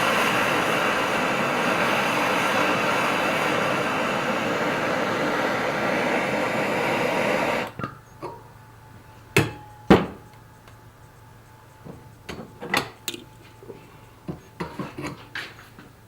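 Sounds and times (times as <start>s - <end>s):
heating equipment rushing: 0.0s - 7.8s.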